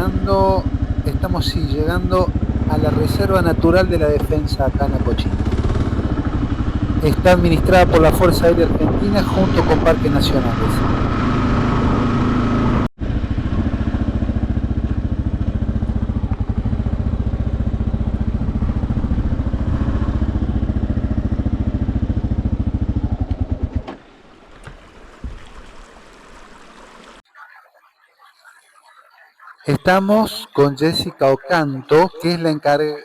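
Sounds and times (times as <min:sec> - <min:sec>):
motorcycle engine running: 0:00.0 - 0:23.9.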